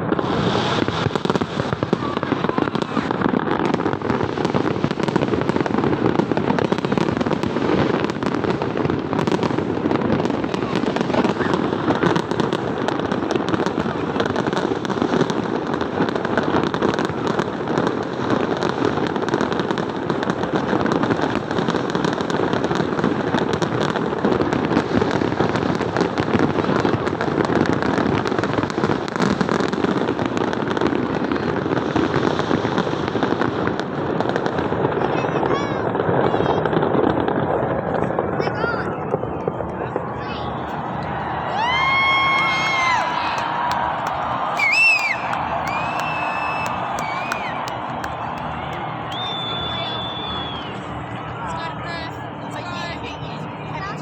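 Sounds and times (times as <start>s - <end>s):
fireworks bangs and crackle: 0.0s - 54.0s.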